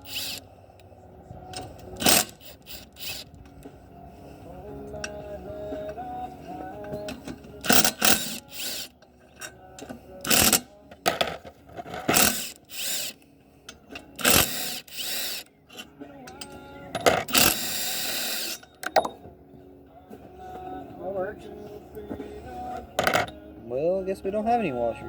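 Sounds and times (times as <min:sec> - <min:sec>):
impact drill bursts: 0:00.0 - 0:00.4, 0:02.0 - 0:03.4, 0:07.7 - 0:08.9, 0:12.1 - 0:13.2, 0:14.2 - 0:15.4, 0:17.2 - 0:18.6.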